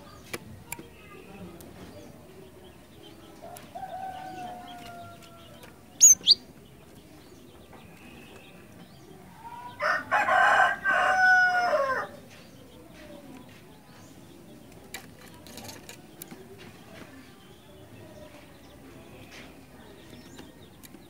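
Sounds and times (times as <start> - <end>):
bird sharp high chirps: 6.0 - 6.5
rooster crowing: 9.8 - 12.1.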